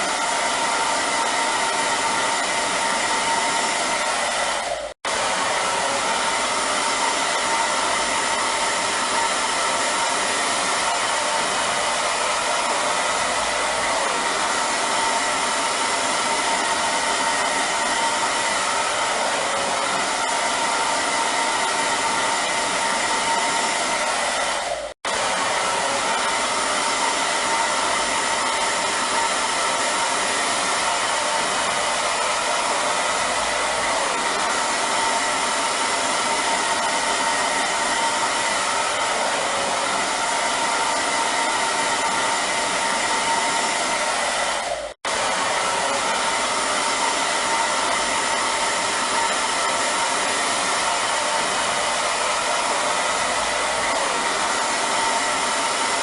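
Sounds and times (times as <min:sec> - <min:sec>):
hair dryer running: 0:00.0 - 0:56.0.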